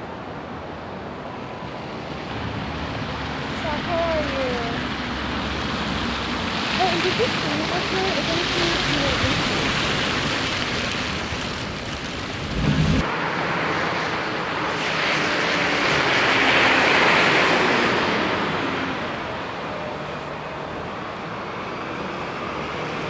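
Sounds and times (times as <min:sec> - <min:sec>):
vehicle tyres hissing on road: 0:01.9 - 0:23.0
noisy roar with low rumble: 0:12.3 - 0:13.1.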